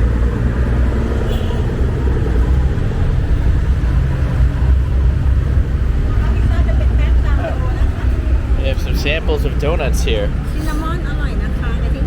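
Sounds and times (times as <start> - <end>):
busy road traffic rumble: 0.0 - 12.0.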